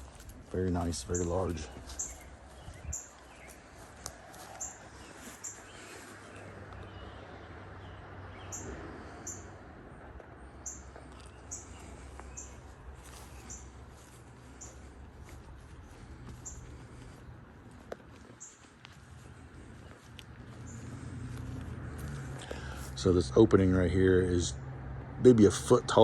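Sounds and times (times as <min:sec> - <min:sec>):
low steady rumble: 0:00.0 - 0:26.0
small bird chirping: 0:01.0 - 0:03.6, 0:04.4 - 0:09.5, 0:10.6 - 0:14.9, 0:15.8 - 0:16.7.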